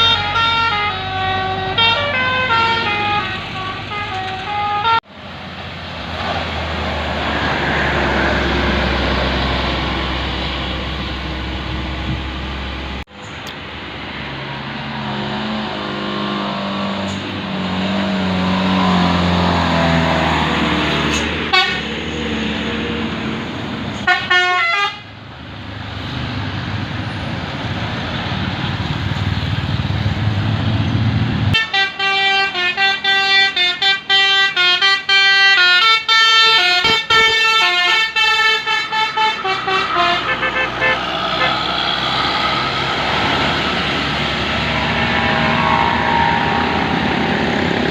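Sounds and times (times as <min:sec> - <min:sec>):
musical multi-trumpet horn: 0:00.0 - 0:05.0, 0:21.5 - 0:21.8, 0:24.1 - 0:25.0, 0:31.6 - 0:41.6
bus engine pulling uphill: 0:00.0 - 0:47.9.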